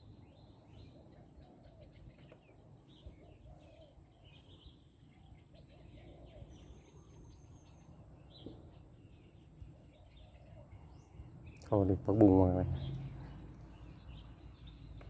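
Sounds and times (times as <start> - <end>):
bird chirps and calls: 0.0 - 15.0.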